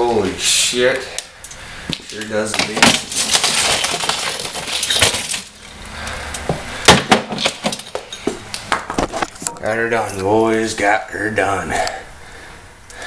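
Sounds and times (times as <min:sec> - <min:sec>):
glass shattering: 0:02.5 - 0:05.8, 0:06.8 - 0:08.4
glass shards clinking: 0:02.6 - 0:05.9, 0:07.3 - 0:08.4.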